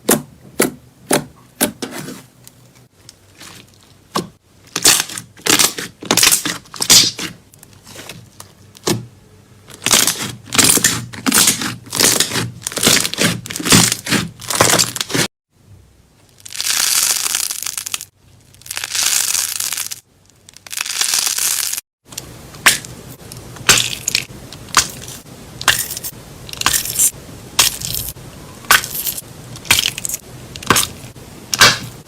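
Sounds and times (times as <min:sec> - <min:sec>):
slime crackling and popping: 0:16.3 - 0:21.8.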